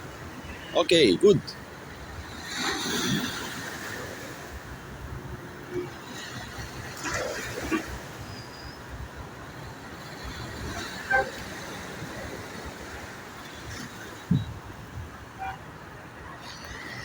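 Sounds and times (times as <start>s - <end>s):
road traffic noise: 0.0s - 17.0s
car horn toot: 11.1s - 11.4s, 15.4s - 15.6s.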